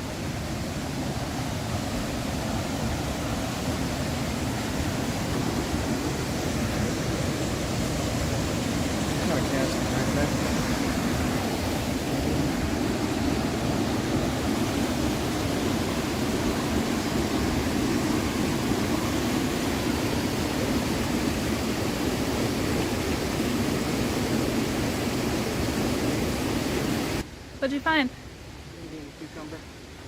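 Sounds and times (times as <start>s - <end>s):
creek water rushing: 0.0s - 30.0s.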